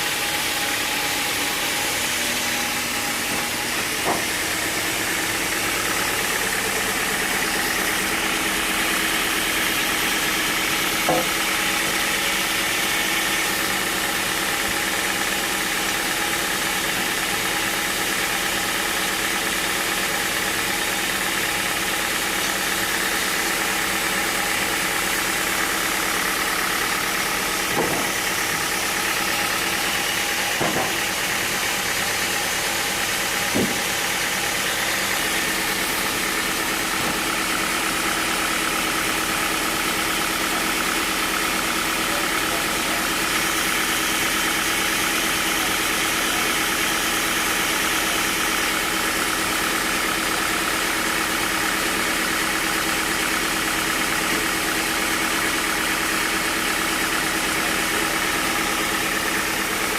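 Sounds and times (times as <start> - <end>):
sawmill machinery humming: 0.0 - 59.9.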